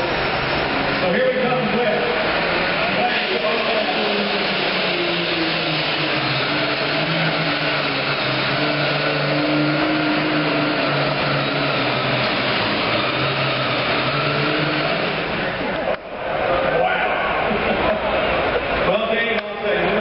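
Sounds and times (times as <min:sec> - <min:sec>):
tractor diesel engine roaring: 0:00.0 - 0:20.0.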